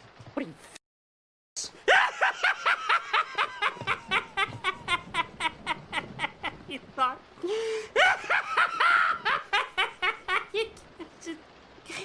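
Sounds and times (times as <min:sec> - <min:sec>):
high-pitched laugh: 0:01.9 - 0:06.5, 0:08.0 - 0:11.4.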